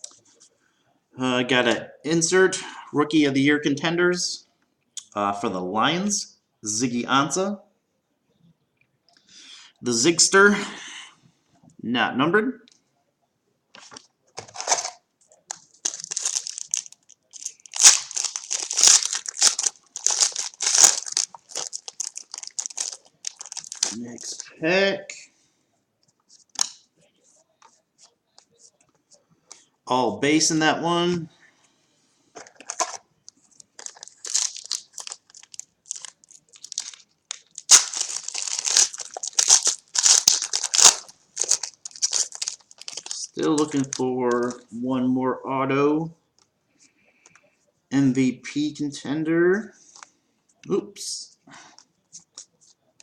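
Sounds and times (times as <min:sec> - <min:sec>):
wrapper crinkling and tearing: 0:14.5 - 0:24.5, 0:32.5 - 0:44.6.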